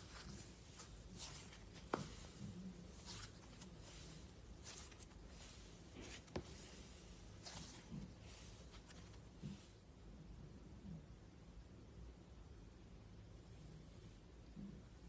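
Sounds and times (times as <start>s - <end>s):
slime crackly swishes: 0.0s - 9.9s.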